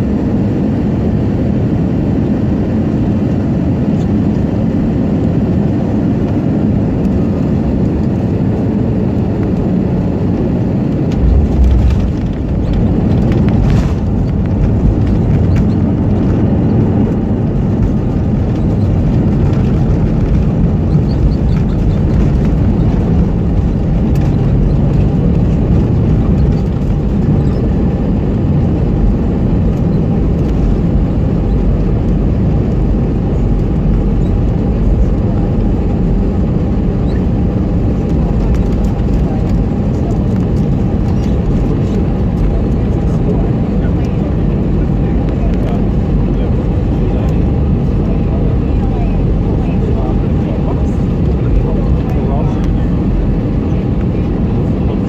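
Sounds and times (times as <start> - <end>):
jet engine and airflow rumble: 0.0 - 55.0
heavy low touchdown jolt: 11.0 - 27.8.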